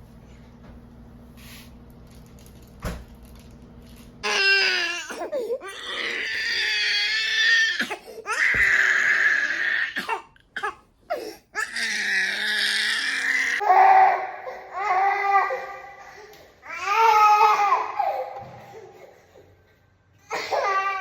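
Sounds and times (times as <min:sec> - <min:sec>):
toddler crying: 0:04.2 - 0:10.7, 0:11.6 - 0:19.2, 0:20.3 - 0:21.0.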